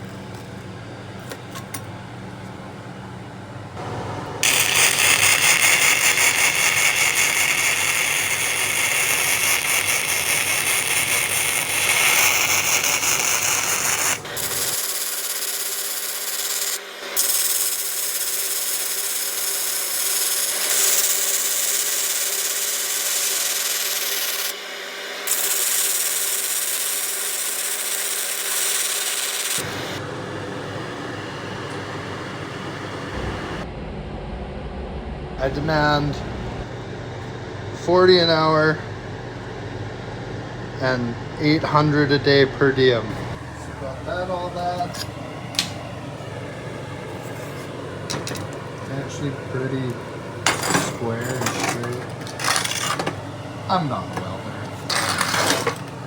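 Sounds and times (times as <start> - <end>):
power tool grinding steel: 3.8 - 30.0, 43.4 - 56.0.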